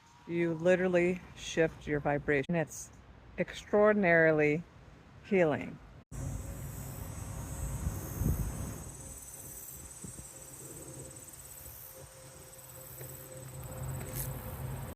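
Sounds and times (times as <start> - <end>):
crickets trilling: 6.1 - 14.9.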